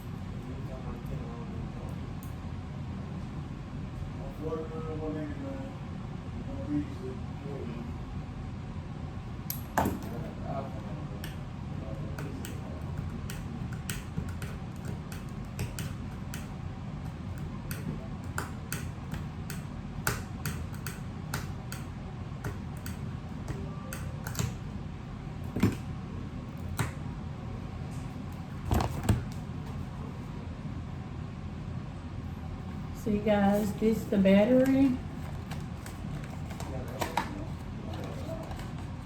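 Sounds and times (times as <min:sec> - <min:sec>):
steady low hum: 0:00.0 - 0:39.0
repair tools clicking on phone: 0:17.1 - 0:24.6.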